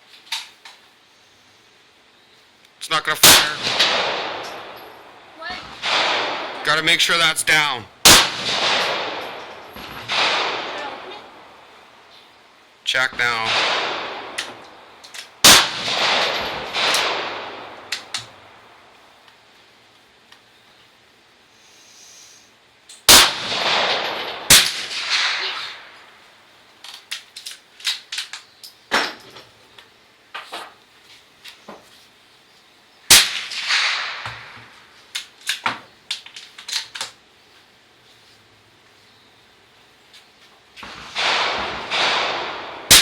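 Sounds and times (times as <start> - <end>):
rifle shots with echo: 3.2 - 11.6, 13.1 - 18.6, 23.1 - 26.0, 33.1 - 34.6, 40.8 - 43.0.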